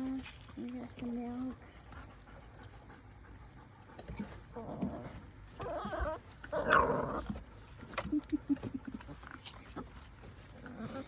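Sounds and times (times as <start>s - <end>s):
puppies whining: 2.1s - 11.0s
puppy grunts: 4.0s - 7.4s, 8.0s - 11.0s.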